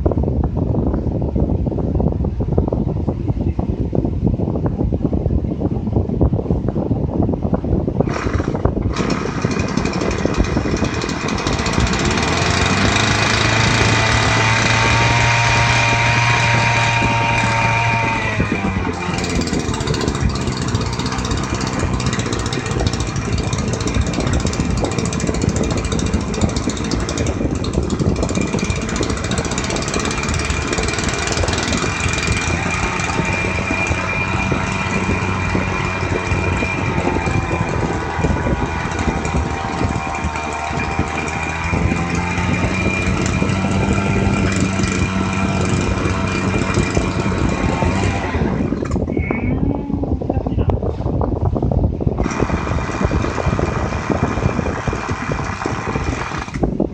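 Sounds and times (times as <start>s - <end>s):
small pump engine running: 8.0s - 49.4s, 52.1s - 56.9s.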